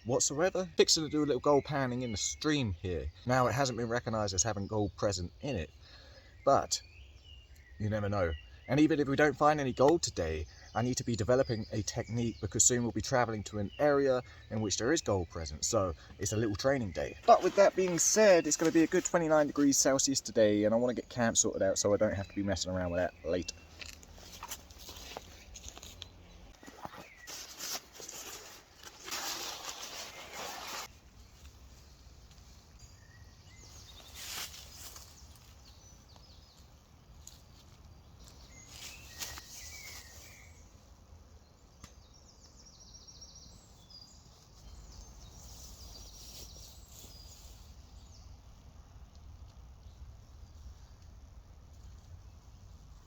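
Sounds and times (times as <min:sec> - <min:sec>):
birds chirping: 0:00.0 - 0:53.0
rustling in undergrowth: 0:15.5 - 0:41.0, 0:43.3 - 0:53.0
footsteps through undergrowth: 0:17.0 - 0:20.0, 0:22.9 - 0:40.6.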